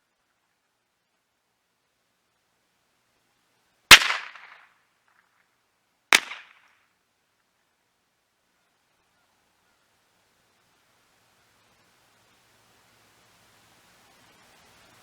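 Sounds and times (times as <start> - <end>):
rifle shots echoing: 3.9 - 4.6, 6.2 - 6.5.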